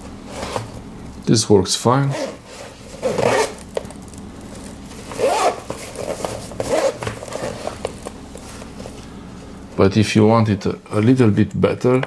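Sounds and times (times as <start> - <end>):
zipper being pulled: 2.1 - 3.6, 5.0 - 7.8.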